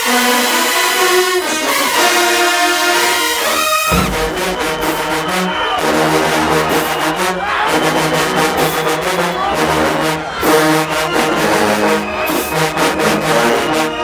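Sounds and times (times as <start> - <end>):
marching band playing: 0.4 - 14.0
brass low notes: 1.4 - 14.0
drumline hits: 3.9 - 11.2.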